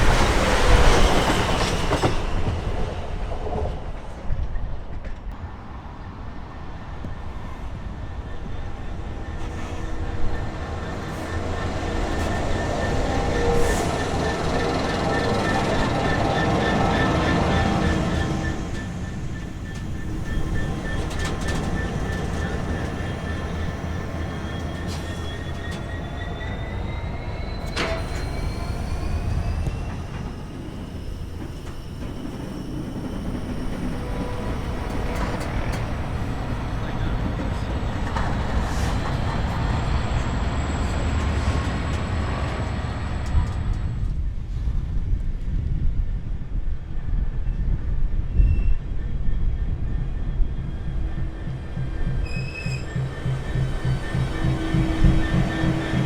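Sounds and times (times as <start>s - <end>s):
train whine rising in pitch: 7.8s - 44.2s, 48.3s - 56.0s
low rumble of wheels: 33.0s - 56.0s.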